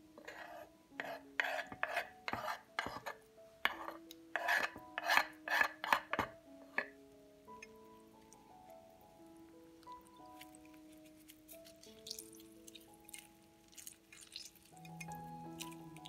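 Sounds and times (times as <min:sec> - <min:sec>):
soft background music: 0:00.0 - 0:16.0
rasping scraping strokes: 0:04.4 - 0:06.0.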